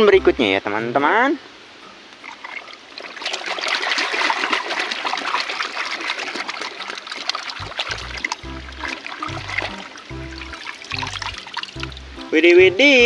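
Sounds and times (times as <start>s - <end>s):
water splashing and trickling: 0.0s - 13.0s.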